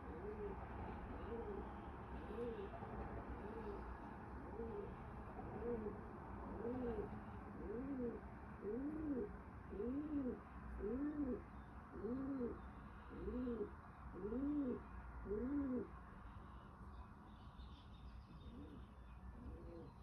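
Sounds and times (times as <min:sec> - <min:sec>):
low cooing hoot: 0:00.0 - 0:03.9, 0:04.5 - 0:15.9.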